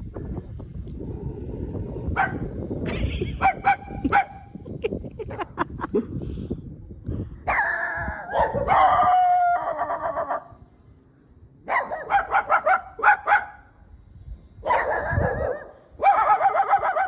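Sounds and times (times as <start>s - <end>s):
dog barking: 2.2s - 2.4s, 3.4s - 4.5s, 7.5s - 10.5s, 11.7s - 13.7s, 14.6s - 17.0s
dog yelping and whining: 14.7s - 17.0s.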